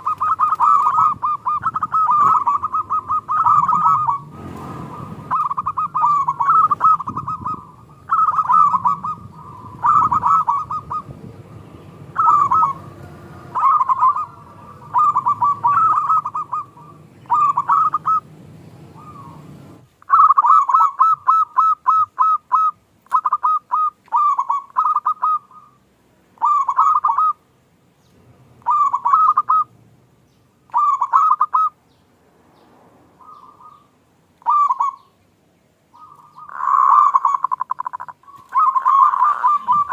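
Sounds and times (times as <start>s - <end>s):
dove cooing: 0.0s - 25.8s, 26.4s - 27.4s, 28.6s - 29.7s, 30.7s - 31.8s, 33.2s - 35.2s, 35.9s - 39.9s
low background rumble: 0.9s - 19.9s.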